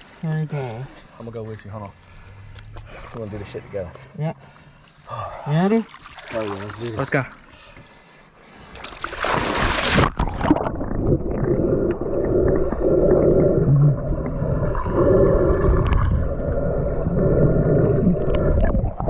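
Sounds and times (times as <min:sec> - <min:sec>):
underwater rumble and bubbling: 0:02.0 - 0:03.6, 0:09.9 - 0:19.0
camera splashing into water: 0:08.9 - 0:10.8.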